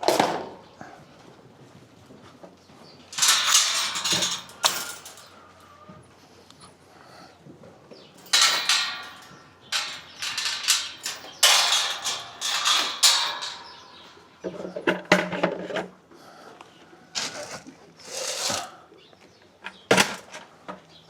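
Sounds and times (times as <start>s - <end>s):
rattling and clanking knocks: 3.2s - 5.4s, 8.2s - 15.4s.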